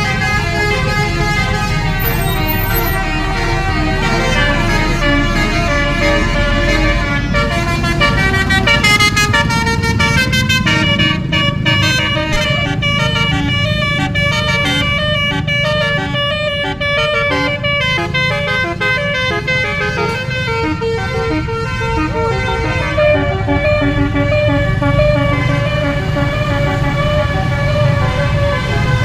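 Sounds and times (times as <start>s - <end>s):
bus engine rumble: 0.0s - 29.0s
multi-note air horn tune: 0.0s - 29.0s
traffic: 0.0s - 29.0s.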